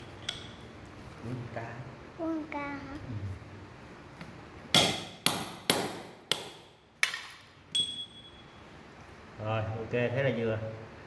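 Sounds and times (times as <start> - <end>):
hammer striking metal: 4.7 - 8.4.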